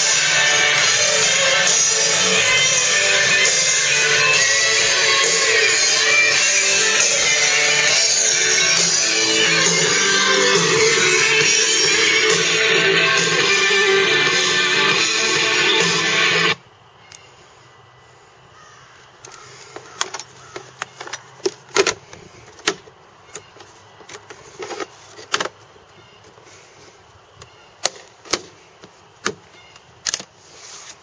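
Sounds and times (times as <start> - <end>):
guitar music on speakers: 0.0 - 16.6.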